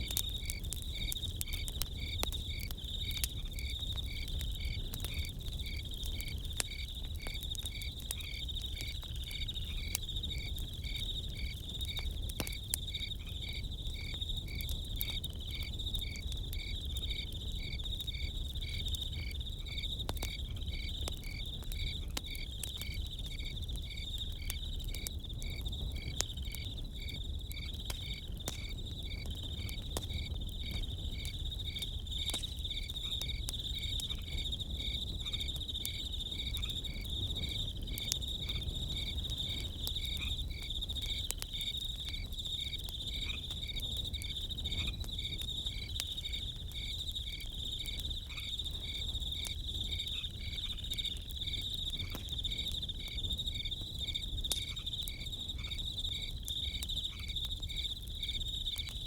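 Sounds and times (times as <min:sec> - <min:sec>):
campfire crackling: 0:00.0 - 0:59.0
crickets chirping: 0:00.0 - 0:59.0
high insect trill: 0:00.0 - 0:59.0.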